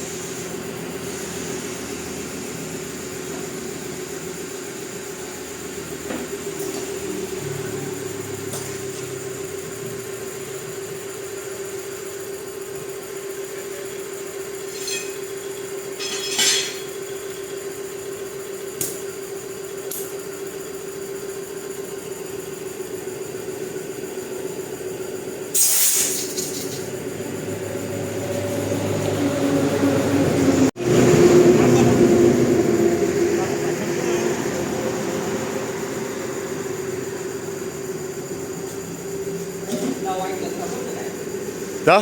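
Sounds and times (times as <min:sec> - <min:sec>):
engine idling: 0:26.7 - 0:42.0.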